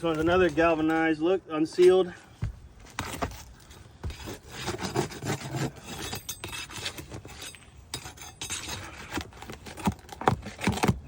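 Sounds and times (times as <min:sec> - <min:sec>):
metal tool scraping and clinking: 0:03.4 - 0:09.2.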